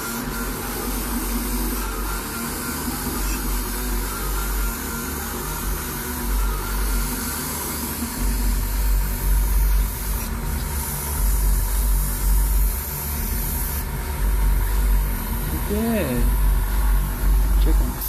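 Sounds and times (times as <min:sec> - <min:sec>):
airbrush hissing: 0:00.0 - 0:18.0
low steady rumble: 0:08.2 - 0:18.0.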